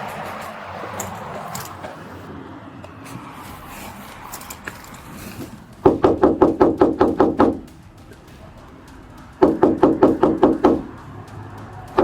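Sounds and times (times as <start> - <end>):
background noise: 0.0 - 12.0
rapid loud knocking: 5.7 - 12.0.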